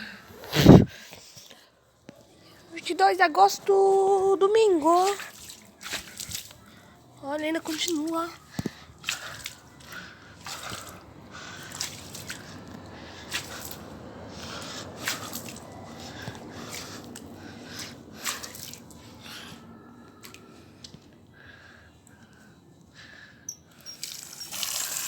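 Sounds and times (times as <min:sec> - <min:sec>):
water drips and splashes: 0:04.6 - 0:19.2, 0:23.8 - 0:25.0
water trickling: 0:23.5 - 0:25.0.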